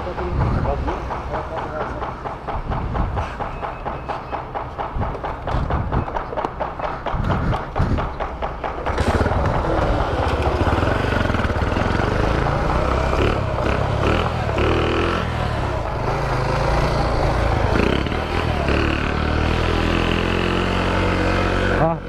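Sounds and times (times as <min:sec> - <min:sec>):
small motorcycle engine revving: 0:08.8 - 0:22.0.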